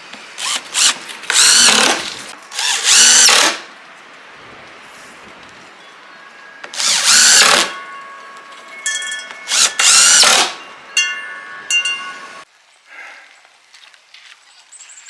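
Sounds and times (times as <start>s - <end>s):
power drill motor whining: 0.4s - 3.7s, 6.6s - 7.9s, 9.4s - 10.6s.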